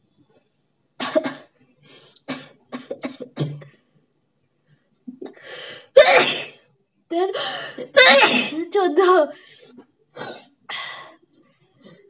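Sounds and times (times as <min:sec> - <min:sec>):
person sneezing and coughing: 0:01.0 - 0:01.5, 0:02.3 - 0:03.7, 0:06.0 - 0:06.6, 0:07.7 - 0:08.6.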